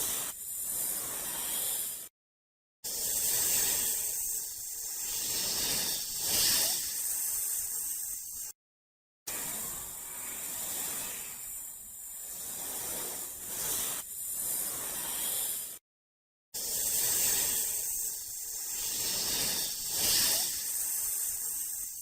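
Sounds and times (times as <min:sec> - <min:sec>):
snake hissing: 0:00.0 - 0:02.1, 0:02.9 - 0:08.6, 0:10.1 - 0:15.8, 0:16.6 - 0:22.0.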